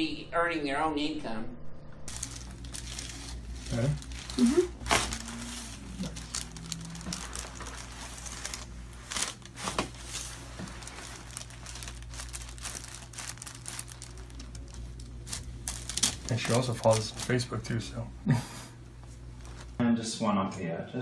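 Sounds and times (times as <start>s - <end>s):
steady low hum: 0.0s - 21.0s
crinkling and rustling handling noise: 2.1s - 18.0s, 19.0s - 19.8s.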